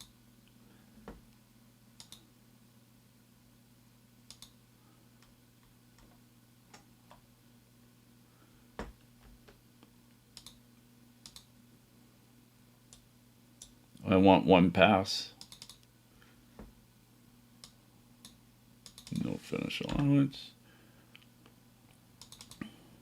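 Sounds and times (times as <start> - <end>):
low steady hum: 0.0 - 23.0
mouse and keyboard clicks: 22.2 - 22.6.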